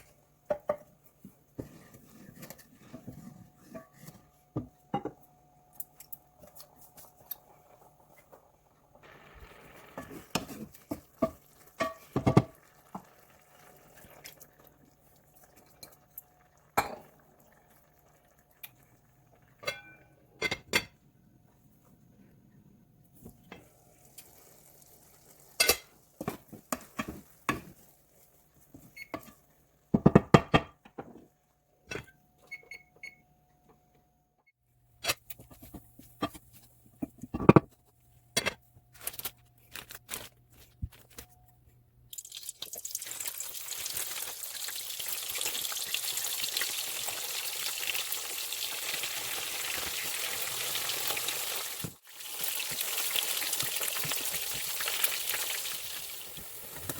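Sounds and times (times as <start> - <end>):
dishes and pots clinking: 1.6 - 5.3, 9.9 - 13.1, 16.8 - 17.1, 19.6 - 21.0, 25.6 - 27.8.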